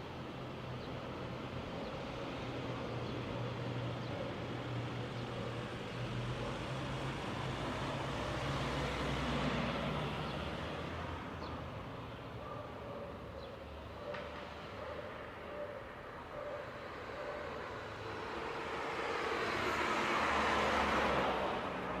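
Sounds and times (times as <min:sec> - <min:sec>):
road traffic: 0:00.0 - 0:22.0
vehicle passing: 0:06.0 - 0:11.5, 0:16.9 - 0:22.0.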